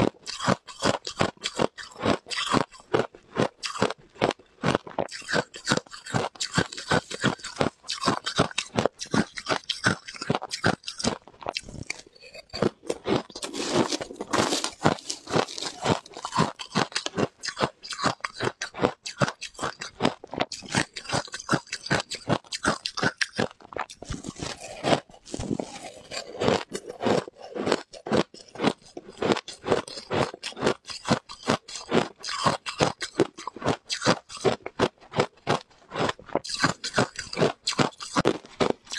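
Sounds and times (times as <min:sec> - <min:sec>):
person crunching ice: 0:00.0 - 0:38.9.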